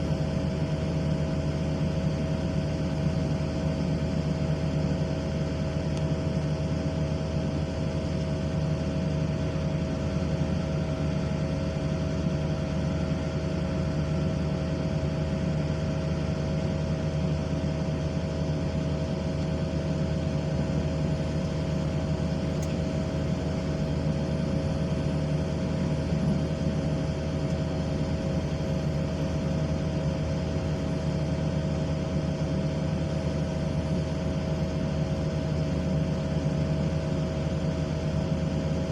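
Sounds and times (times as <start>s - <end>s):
excavator diesel engine running: 0.0s - 38.9s
high whine: 22.9s - 29.0s.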